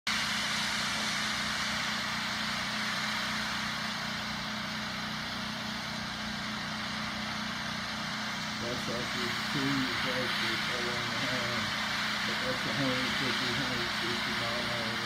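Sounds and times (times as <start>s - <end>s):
engine idling: 0.1s - 15.0s.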